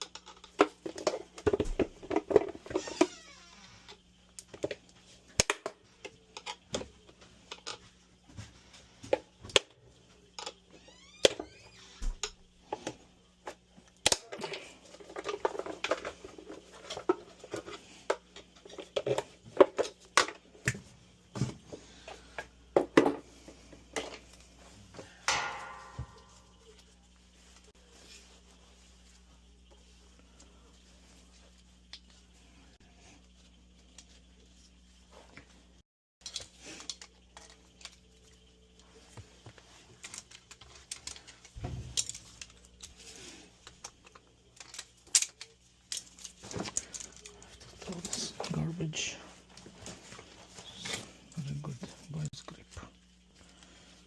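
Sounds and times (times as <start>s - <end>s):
ringing metallic clang: 25.3s - 26.5s.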